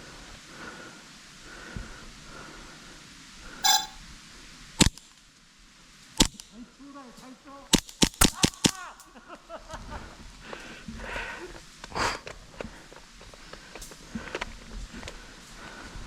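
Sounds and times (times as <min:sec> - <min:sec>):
brief high tone: 0:03.6 - 0:04.0.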